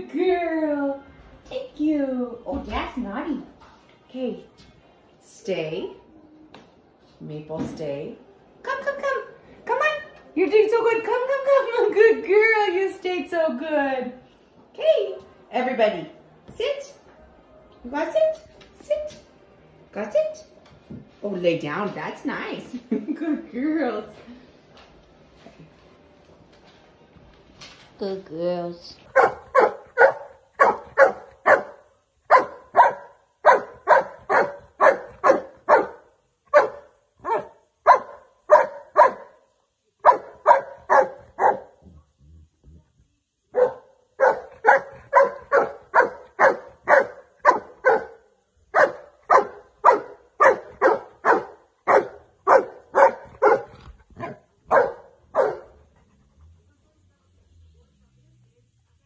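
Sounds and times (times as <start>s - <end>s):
dog barking: 29.1s - 39.4s, 40.0s - 41.8s, 43.5s - 55.9s.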